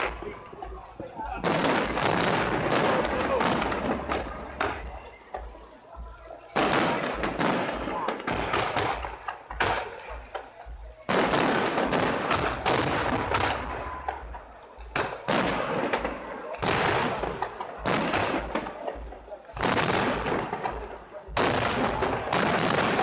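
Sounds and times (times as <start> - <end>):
spectator voices: 0.0 - 11.1
fireworks bangs and crackles: 0.0 - 23.0.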